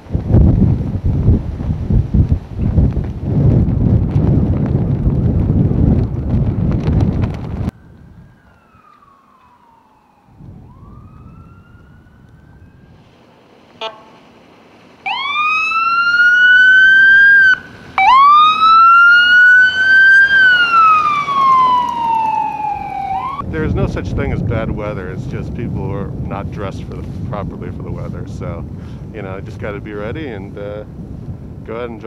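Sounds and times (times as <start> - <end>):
wind on microphone: 0.0 - 8.8, 10.2 - 13.1, 15.8 - 32.0
emergency vehicle siren wailing: 7.6 - 14.4, 15.0 - 23.4.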